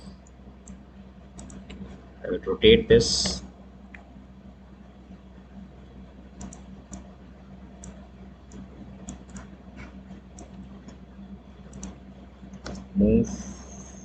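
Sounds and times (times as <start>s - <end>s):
low steady hum: 0.0s - 14.0s
mouse and keyboard clicking: 1.4s - 1.8s, 6.4s - 7.1s, 7.8s - 11.0s, 11.7s - 12.0s.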